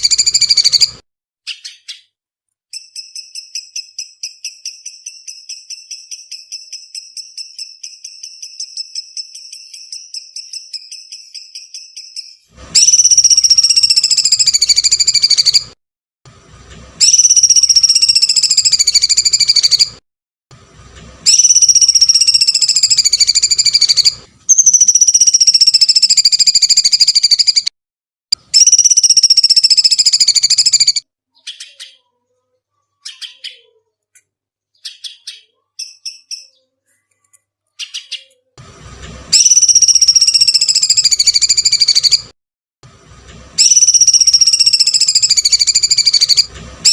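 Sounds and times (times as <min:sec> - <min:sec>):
bird screeching: 0:00.0 - 0:00.9, 0:12.8 - 0:15.7, 0:21.3 - 0:27.7, 0:28.6 - 0:32.0, 0:39.3 - 0:42.2, 0:43.6 - 0:46.9
bird chirping: 0:00.0 - 0:15.8, 0:17.0 - 0:20.0, 0:21.2 - 0:27.7, 0:28.4 - 0:38.5, 0:39.3 - 0:42.3, 0:43.6 - 0:46.9.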